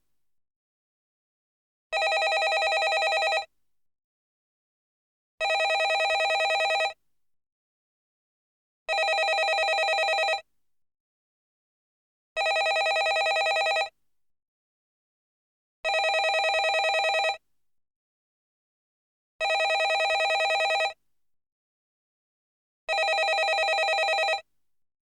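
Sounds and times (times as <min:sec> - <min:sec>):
telephone ringing: 0:02.0 - 0:03.5, 0:05.4 - 0:07.0, 0:08.9 - 0:10.4, 0:12.4 - 0:13.9, 0:15.9 - 0:17.4, 0:19.4 - 0:21.0, 0:22.9 - 0:24.4.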